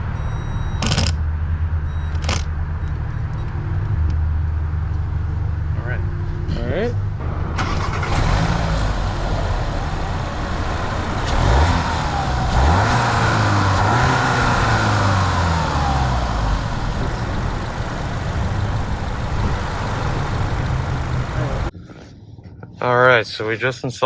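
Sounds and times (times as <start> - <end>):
car engine revving: 7.2 - 21.7.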